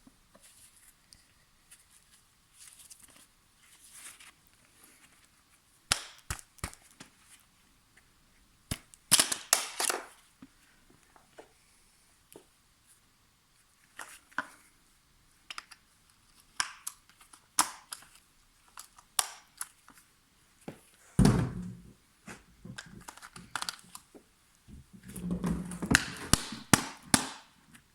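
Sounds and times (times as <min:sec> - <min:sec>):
heavy thump: 0:21.2 - 0:22.4.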